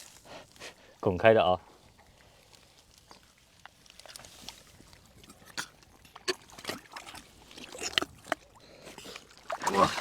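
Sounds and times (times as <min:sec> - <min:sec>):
hands squelching in wet mud: 0:02.5 - 0:10.0
water sloshing: 0:03.9 - 0:10.0.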